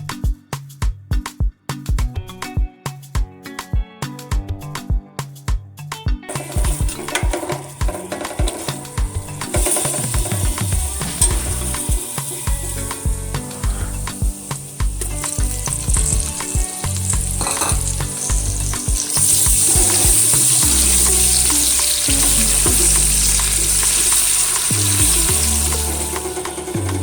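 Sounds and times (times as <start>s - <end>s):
food sizzling in hot oil: 6.3s - 27.0s.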